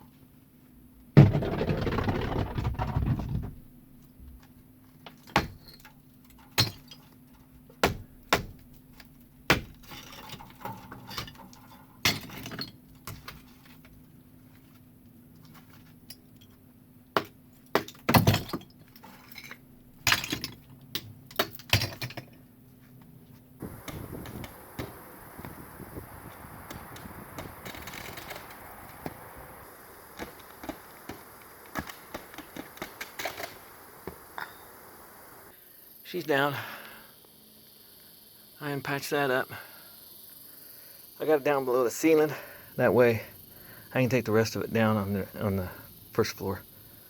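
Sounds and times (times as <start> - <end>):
falling rubble clattering: 1.2 - 3.6, 17.8 - 20.8, 23.6 - 35.5.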